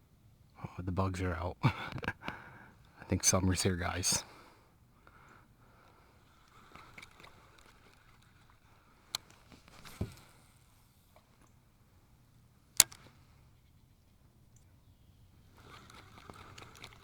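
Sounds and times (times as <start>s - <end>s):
sharp clicks on a kayak: 6.4s - 10.4s, 12.7s - 13.3s.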